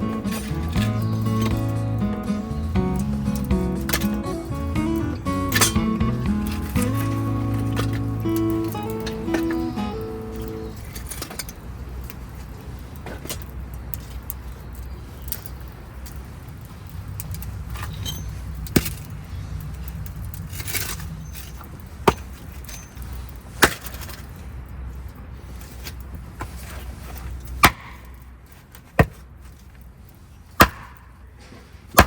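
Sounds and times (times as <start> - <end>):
steady low rumble: 0.0 - 10.9.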